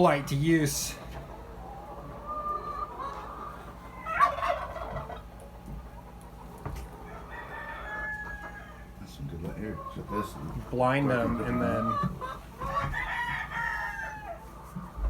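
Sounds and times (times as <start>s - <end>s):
hens clucking: 0.0s - 15.0s
rooster crowing: 7.0s - 9.0s, 11.3s - 14.6s.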